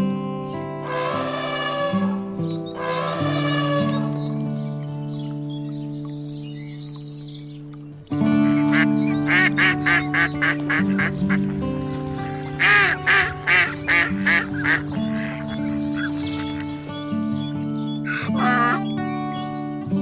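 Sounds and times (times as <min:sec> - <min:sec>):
background music with held chords: 0:00.0 - 0:20.0
duck quacking: 0:00.8 - 0:04.2, 0:08.5 - 0:11.6, 0:12.6 - 0:16.4, 0:18.1 - 0:18.9.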